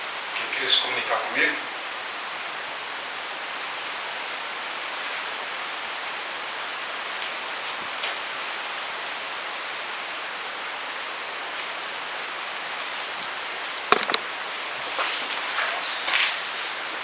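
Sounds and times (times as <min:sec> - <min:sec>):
steady hiss: 0:00.0 - 0:17.0
sharp knocks: 0:13.9 - 0:14.3.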